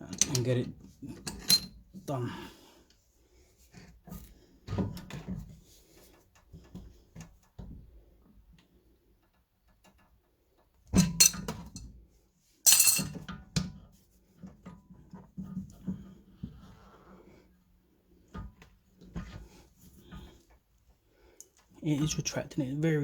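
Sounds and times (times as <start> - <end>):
metal tool clinking and clattering: 1.2 - 1.8, 11.0 - 11.9, 12.7 - 13.3.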